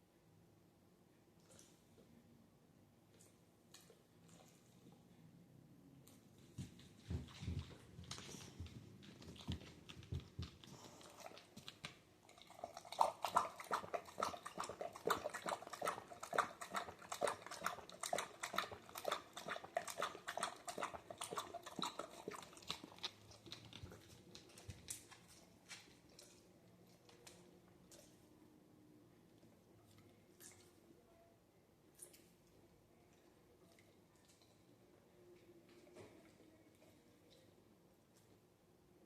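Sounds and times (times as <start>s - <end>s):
dog lapping from a bowl: 7.1s - 25.2s.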